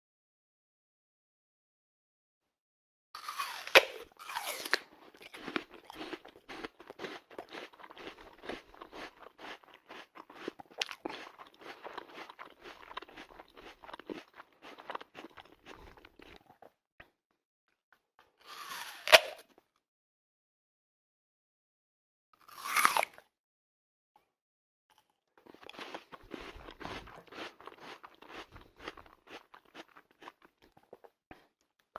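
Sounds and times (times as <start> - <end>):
person biting crisp apple: 3.2 - 16.7, 18.4 - 19.5, 22.4 - 23.2, 25.5 - 30.5
crunchy chewing: 3.2 - 16.8, 22.4 - 23.2, 25.0 - 31.9.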